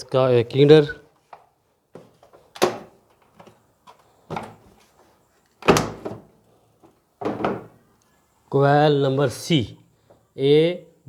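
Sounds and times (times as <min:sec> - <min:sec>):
hard plastic clunks and rattles: 0:07.2 - 0:07.8.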